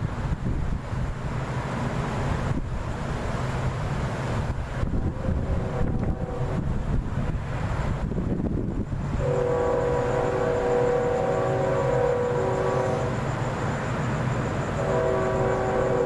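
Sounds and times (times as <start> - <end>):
steady low rumble: 0.0 - 16.0
train horn chord: 5.1 - 6.6, 9.2 - 13.2, 14.8 - 16.0.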